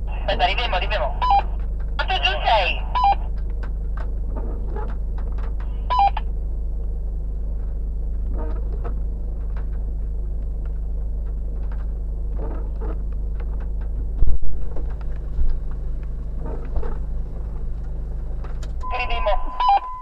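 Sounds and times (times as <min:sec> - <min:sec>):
vehicle engine idling: 0:00.0 - 0:20.0
electronic two-tone beeps: 0:05.9 - 0:06.2, 0:18.8 - 0:20.0.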